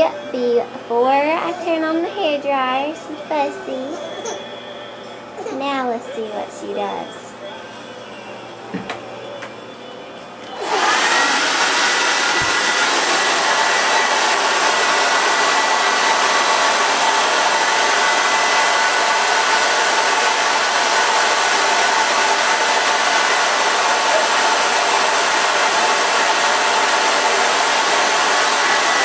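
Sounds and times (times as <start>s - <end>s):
hair dryer blowing: 10.5s - 29.0s.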